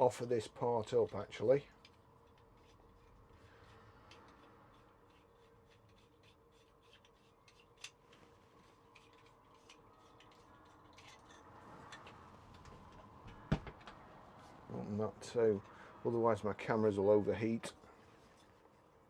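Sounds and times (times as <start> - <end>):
plastic fittings clicking and rubbing: 0.8 - 8.3, 8.9 - 13.0.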